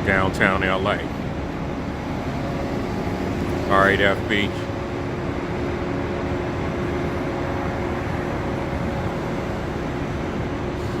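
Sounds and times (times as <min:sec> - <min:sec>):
engine running: 0:00.0 - 0:11.0.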